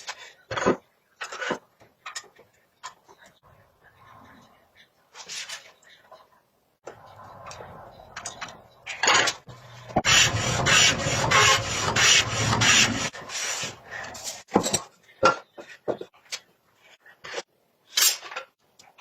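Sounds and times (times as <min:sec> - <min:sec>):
wood scraping: 0:07.0 - 0:14.6
rasp on wood strokes: 0:10.0 - 0:14.1.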